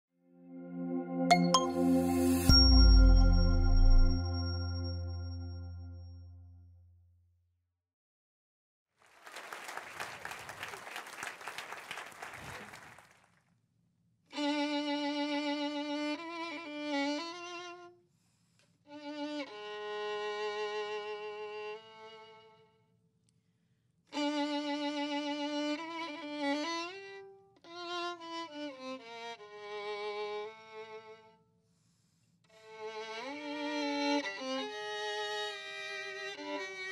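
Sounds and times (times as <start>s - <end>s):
audience applause: 9.0s - 13.2s
solo violin slow melody: 14.3s - 18.0s, 18.9s - 22.8s, 24.1s - 31.4s, 32.5s - 36.9s.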